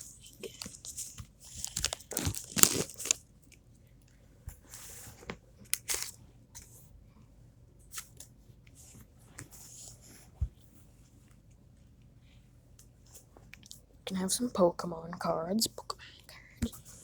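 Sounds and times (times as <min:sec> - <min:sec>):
foil wrapper crinkling: 0:00.4 - 0:03.2, 0:05.8 - 0:06.2.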